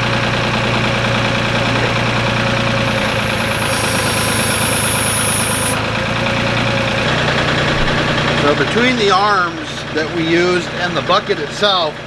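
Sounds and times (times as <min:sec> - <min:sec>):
high hiss: 0:02.8 - 0:05.8.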